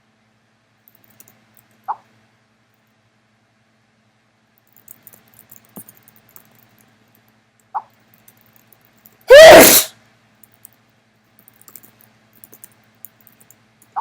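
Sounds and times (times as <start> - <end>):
person sneezing: 9.3 - 9.9.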